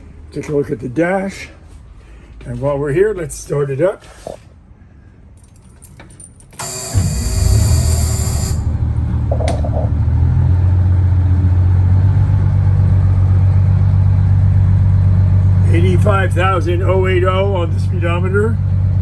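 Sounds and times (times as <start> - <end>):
short beep: 6.6 - 8.7
starter cranking: 6.6 - 8.7
diesel engine idling: 6.9 - 19.0.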